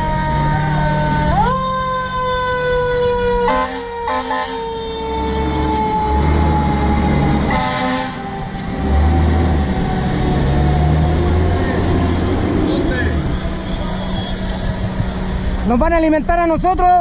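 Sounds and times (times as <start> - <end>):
fire engine siren wailing: 0.0 - 15.8
diesel engine rumbling: 0.0 - 17.0
air horn blasts: 3.4 - 4.8, 7.5 - 8.3, 12.8 - 15.7.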